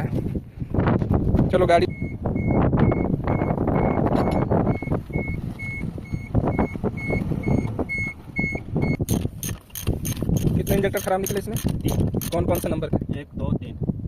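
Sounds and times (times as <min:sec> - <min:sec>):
reversing alarm beeping: 0:01.8 - 0:09.0
diesel engine running: 0:01.9 - 0:10.6.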